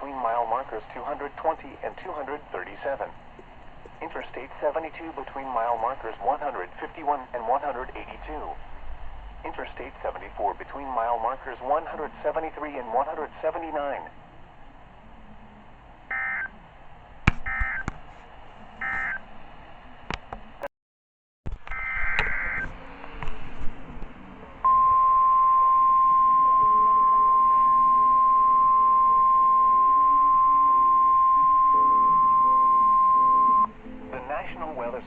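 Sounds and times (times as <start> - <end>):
steady warning alarm tone: 16.1 - 16.5, 17.5 - 17.8, 18.8 - 19.2, 24.7 - 33.7.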